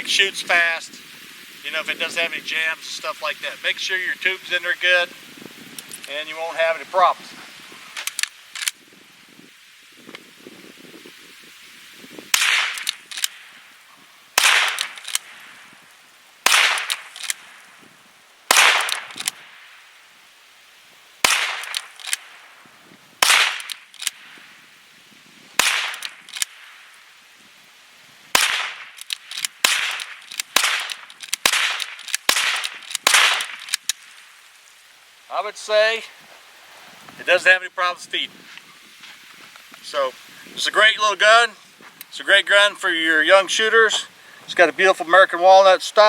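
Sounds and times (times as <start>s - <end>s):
rifle shots: 12.3s - 13.4s, 14.4s - 15.5s, 16.4s - 17.5s, 18.5s - 19.5s, 21.2s - 22.4s, 23.2s - 24.3s, 25.6s - 26.7s, 28.3s - 34.1s.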